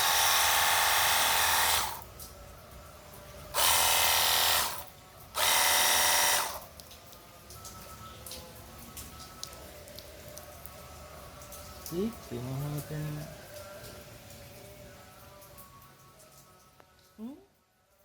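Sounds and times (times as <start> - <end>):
pressure washer pump whining: 0.0 - 2.1, 3.5 - 6.7.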